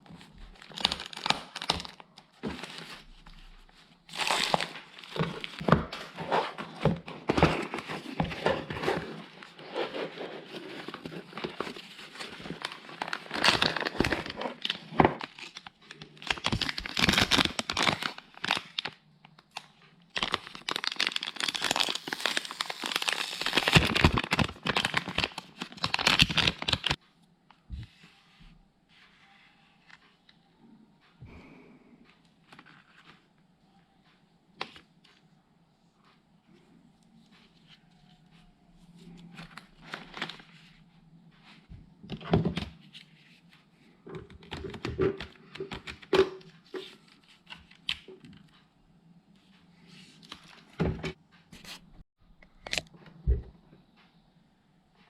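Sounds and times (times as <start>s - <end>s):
crinkling and tearing: 0.2s - 3.5s, 4.1s - 27.0s.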